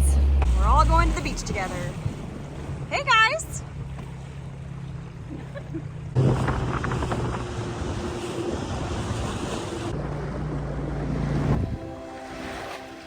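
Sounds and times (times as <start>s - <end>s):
outboard motor humming: 0.0s - 13.0s
rushing water: 0.0s - 13.0s
wind buffeting microphone: 6.1s - 12.7s.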